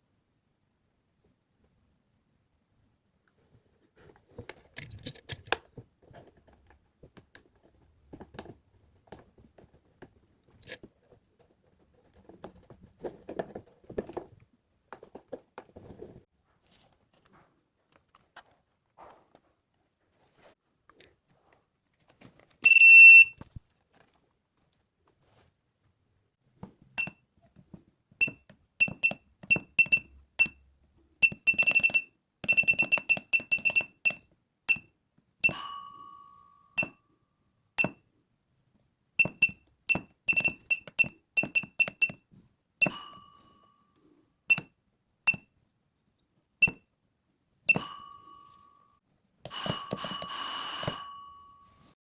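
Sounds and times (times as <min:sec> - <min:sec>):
short high beeps with clicks: 0:22.6 - 0:23.4, 0:28.2 - 0:30.6, 0:31.2 - 0:34.8, 0:39.2 - 0:42.2.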